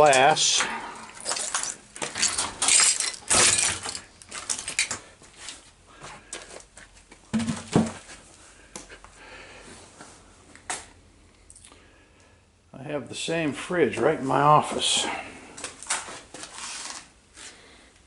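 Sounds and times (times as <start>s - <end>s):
footsteps crunching on broken glass: 0.0s - 7.2s.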